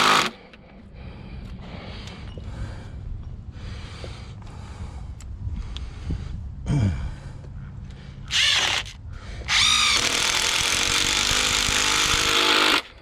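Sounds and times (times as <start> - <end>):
power drill running: 0.0 - 0.4, 8.3 - 13.0.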